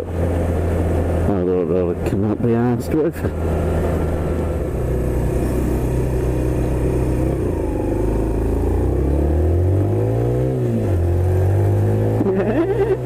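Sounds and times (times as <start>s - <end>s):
motorcycle engine accelerating: 3.3s - 13.0s.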